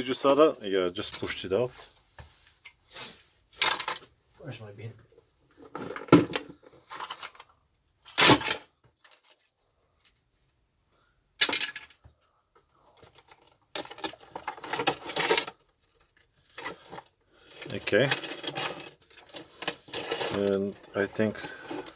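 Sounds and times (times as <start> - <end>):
parts rattling: 3.6 - 4.1, 11.4 - 12.0, 12.9 - 21.9.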